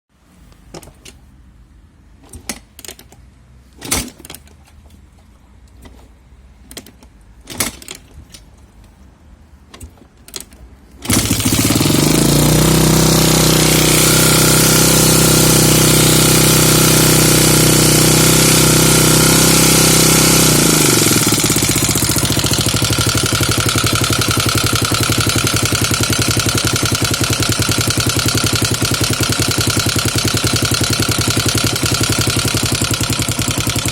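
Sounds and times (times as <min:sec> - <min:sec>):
rapid clanking from engine: 0:11.0 - 0:33.9
motorcycle engine idling: 0:11.1 - 0:33.9.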